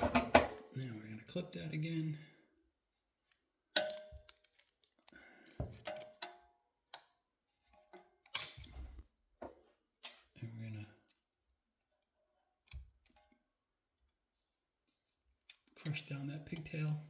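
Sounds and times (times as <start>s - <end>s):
metallic clicks and clinks: 3.8s - 5.1s, 5.7s - 6.4s.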